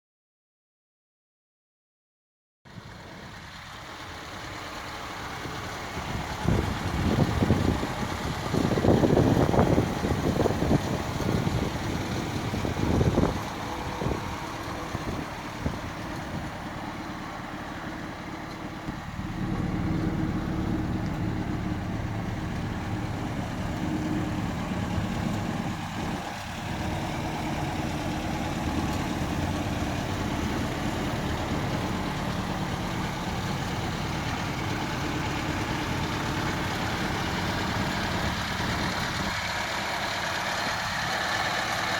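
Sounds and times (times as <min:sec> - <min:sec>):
car engine idling: 0:02.7 - 0:41.9.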